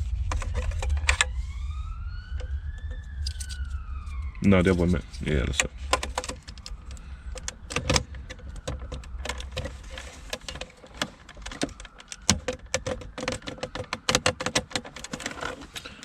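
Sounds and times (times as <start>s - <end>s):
hard plastic clicks and rattles: 5.5s - 16.0s.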